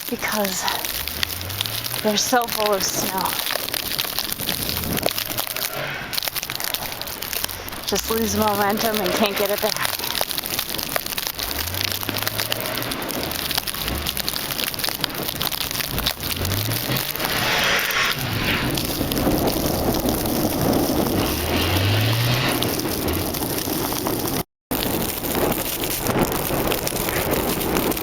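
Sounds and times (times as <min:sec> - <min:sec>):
car engine revving: 0:00.0 - 0:24.4
snow crackling on plastic bag: 0:00.0 - 0:28.0.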